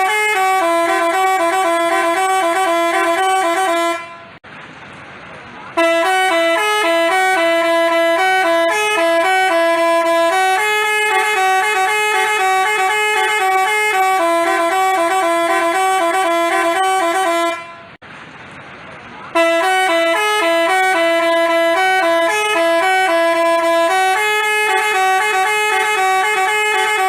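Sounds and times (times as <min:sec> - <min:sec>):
multi-tone bus horn melody: 0:00.0 - 0:04.4, 0:05.7 - 0:18.0, 0:19.3 - 0:27.0.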